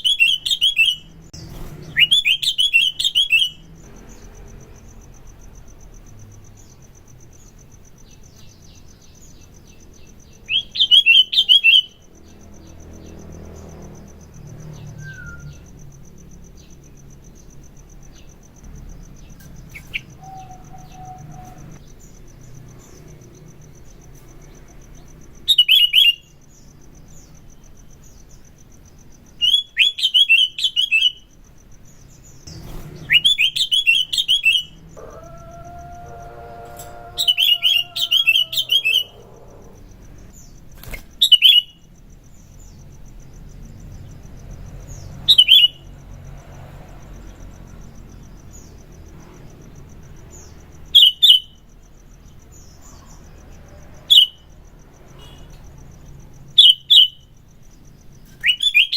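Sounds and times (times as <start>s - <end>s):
bird chirping in loud bursts: 0.0s - 4.4s, 8.1s - 13.9s, 32.1s - 42.7s, 44.8s - 45.9s, 56.5s - 57.3s, 58.4s - 58.9s
faint high trill: 35.0s - 40.2s.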